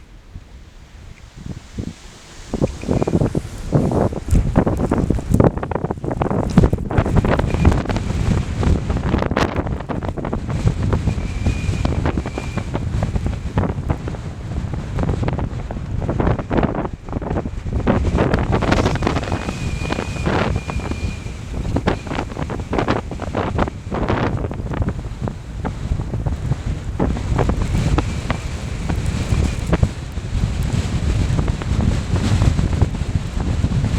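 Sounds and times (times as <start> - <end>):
wind buffeting microphone: 0.0 - 33.9
faint high whistle: 10.9 - 13.4, 18.6 - 23.8.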